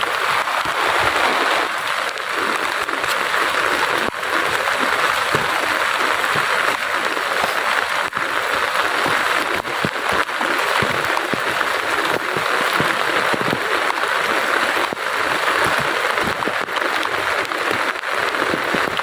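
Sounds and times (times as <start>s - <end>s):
drips and splashes: 0.0s - 19.0s
heavy rain: 0.0s - 19.0s.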